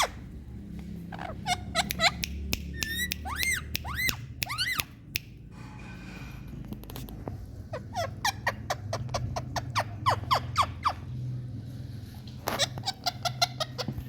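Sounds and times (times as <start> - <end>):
parrot squawking: 0.0 - 0.3, 1.1 - 4.9, 7.7 - 11.2, 12.5 - 14.0.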